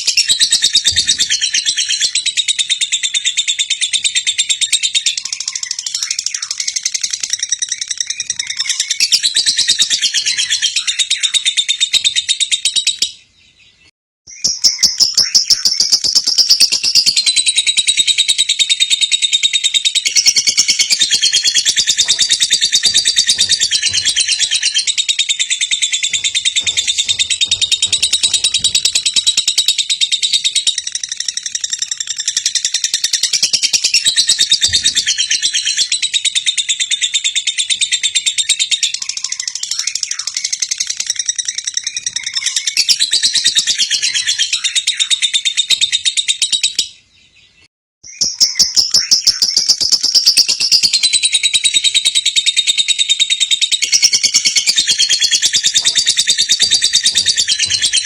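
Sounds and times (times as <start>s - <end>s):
lovebird chattering trill: 48.1s - 58.0s.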